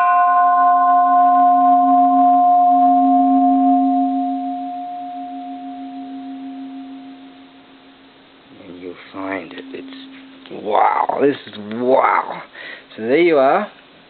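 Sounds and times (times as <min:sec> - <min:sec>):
temple bell ringing: 0:00.0 - 0:08.0, 0:08.6 - 0:11.5.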